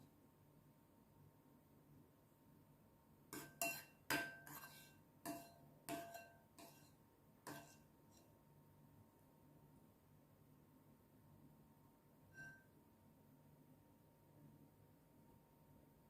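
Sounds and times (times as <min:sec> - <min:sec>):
tableware clinking: 0:03.4 - 0:06.9, 0:12.3 - 0:12.7.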